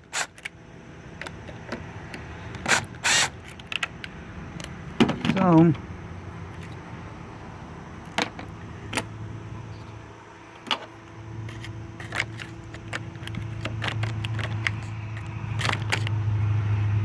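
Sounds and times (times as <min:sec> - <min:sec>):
steady low hum: 0:00.0 - 0:17.0
hand tool clicks and metal taps: 0:01.2 - 0:05.4, 0:11.5 - 0:16.2.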